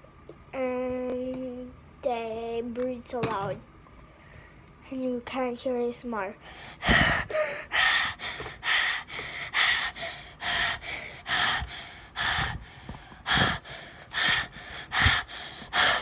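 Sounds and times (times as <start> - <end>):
person breathing heavily: 6.4 - 16.0.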